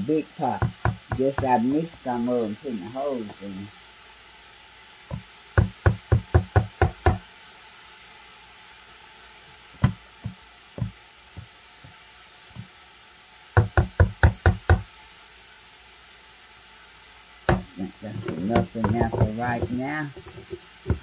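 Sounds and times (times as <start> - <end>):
kitchen utensil knocking hard surface: 18.3 - 21.0.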